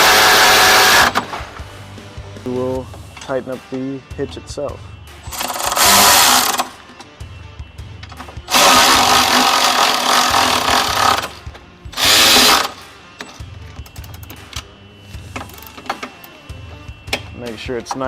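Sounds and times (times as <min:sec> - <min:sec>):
electric ratchet running: 0:00.0 - 0:01.2, 0:05.3 - 0:06.7, 0:08.5 - 0:11.4, 0:12.0 - 0:12.8.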